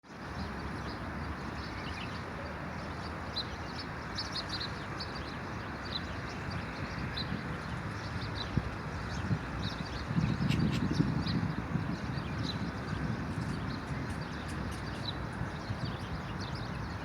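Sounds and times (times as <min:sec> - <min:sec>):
birds chirping: 0:08.0 - 0:17.0.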